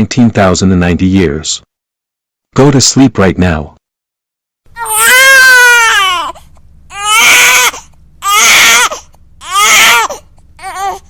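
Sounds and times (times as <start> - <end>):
person crying loudly: 4.8 - 6.3.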